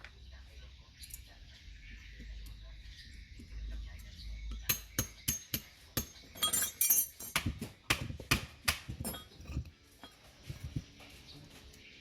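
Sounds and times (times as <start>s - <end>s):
metal tools clinking: 4.7s - 7.4s, 9.0s - 10.2s.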